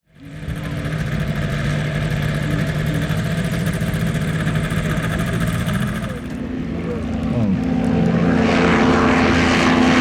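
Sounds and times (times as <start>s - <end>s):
aircraft engine running steadily: 0.0s - 10.0s.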